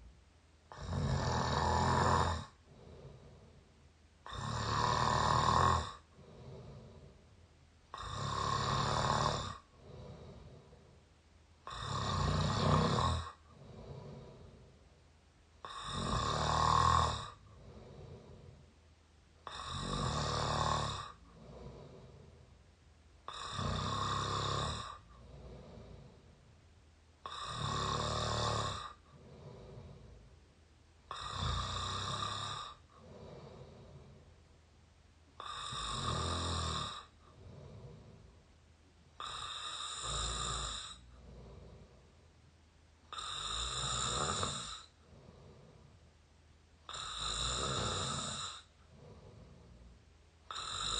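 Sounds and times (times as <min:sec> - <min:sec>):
quiet breath: 0:00.0 - 0:50.9
person snoring: 0:00.7 - 0:03.6, 0:04.2 - 0:07.2, 0:07.9 - 0:11.0, 0:11.6 - 0:14.8, 0:15.6 - 0:18.6, 0:19.4 - 0:22.4, 0:23.2 - 0:26.3, 0:27.2 - 0:30.3, 0:31.1 - 0:34.3, 0:35.4 - 0:38.3, 0:39.2 - 0:42.2, 0:43.1 - 0:46.0, 0:46.8 - 0:50.9.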